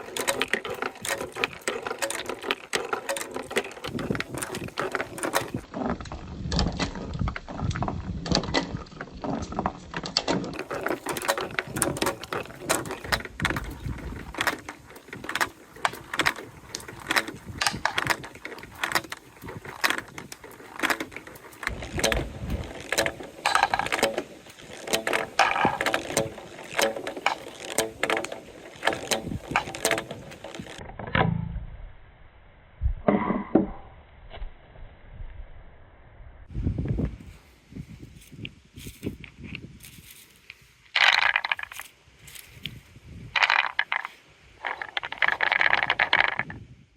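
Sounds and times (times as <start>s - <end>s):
marbles clattering down plastic track: 0.0s - 30.8s, 41.0s - 41.9s, 43.4s - 46.5s.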